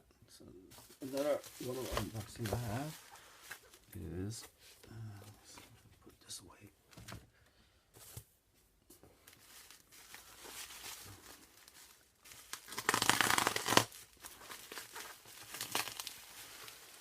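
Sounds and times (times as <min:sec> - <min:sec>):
packaging crinkling: 0:09.3 - 0:17.0
packaging tearing: 0:11.6 - 0:17.0.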